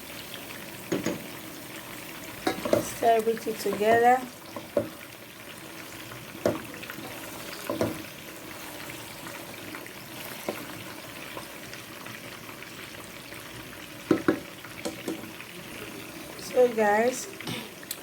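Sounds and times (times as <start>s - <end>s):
sauce hissing in a pot: 0.0s - 18.0s
spoon knocking against pot: 0.9s - 1.2s, 2.4s - 3.0s, 3.7s - 5.0s, 6.4s - 6.7s, 7.6s - 8.0s, 14.1s - 15.2s.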